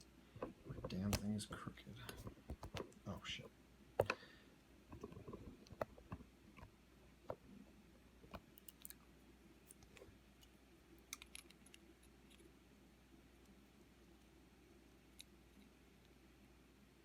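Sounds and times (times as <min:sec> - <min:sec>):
small metal lock parts clicking: 0:11.1 - 0:12.5.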